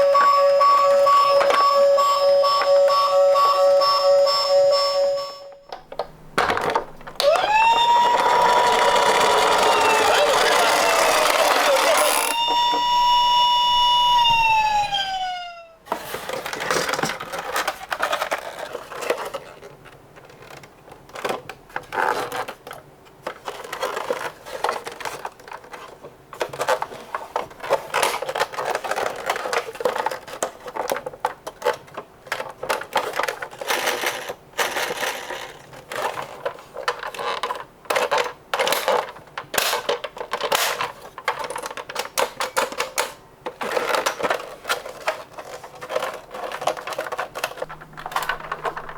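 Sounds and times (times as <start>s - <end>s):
toy cars clattering down slope: 6.5s - 13.4s, 23.3s - 48.9s
siren winding down: 7.2s - 15.8s.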